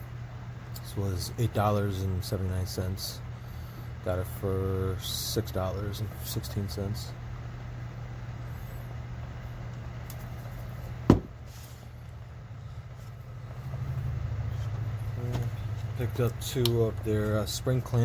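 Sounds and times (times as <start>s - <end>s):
low background hum: 0.0s - 18.0s
sharp knock: 11.1s - 11.4s.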